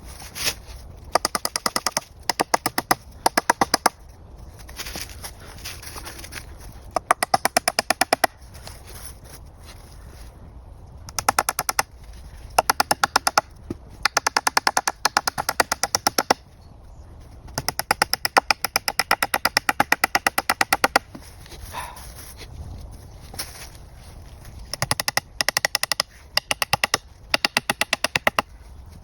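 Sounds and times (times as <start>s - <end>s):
rapid even tapping: 11.1s - 11.9s, 12.5s - 16.4s, 17.5s - 21.2s, 24.7s - 28.5s.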